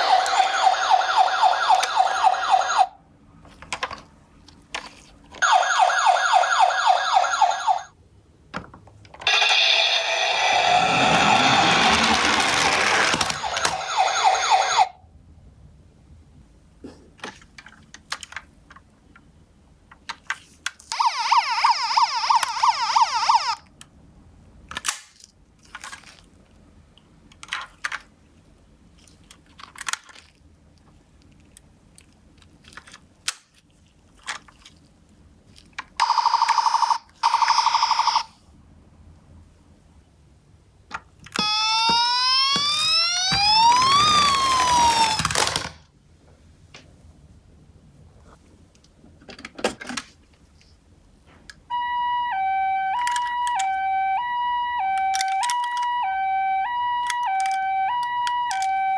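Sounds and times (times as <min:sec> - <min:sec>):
toy ambulance sirens: 0:00.0 - 0:03.0, 0:05.4 - 0:07.9, 0:09.2 - 0:15.0, 0:20.9 - 0:23.7, 0:36.0 - 0:38.4, 0:41.3 - 0:45.7, 0:51.7 - 0:58.9.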